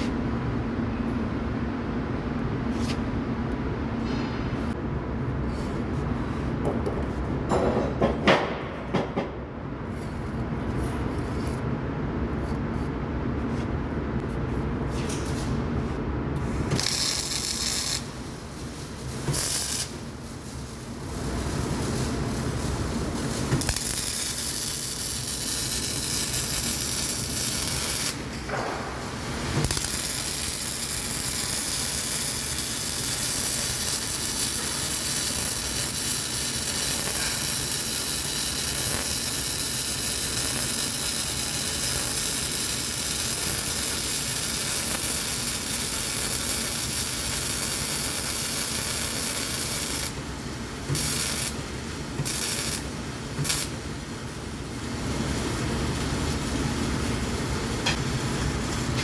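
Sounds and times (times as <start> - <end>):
welding arc hissing: 16.4 - 58.6.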